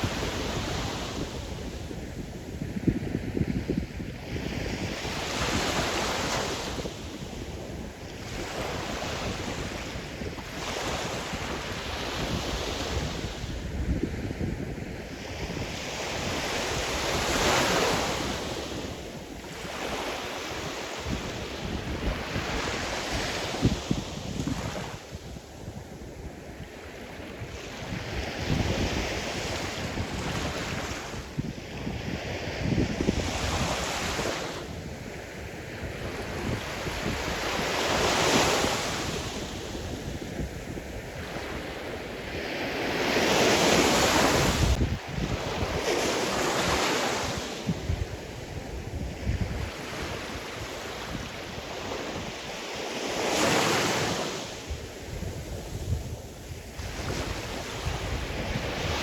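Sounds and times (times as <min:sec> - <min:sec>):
wind on microphone: 0:00.0 - 0:59.0.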